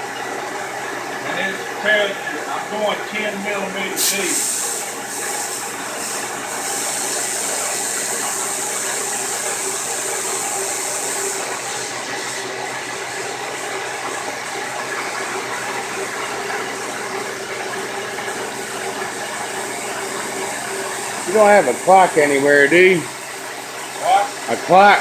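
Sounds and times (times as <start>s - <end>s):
milling machine hum: 0.0s - 25.0s
coolant mist hissing: 1.3s - 25.0s.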